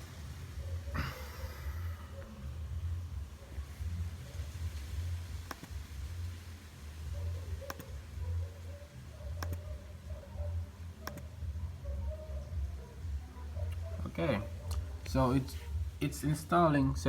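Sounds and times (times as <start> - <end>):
steady low hum: 0.0 - 17.0
sharp single clicks: 5.5 - 5.8, 7.7 - 7.9, 11.0 - 11.3.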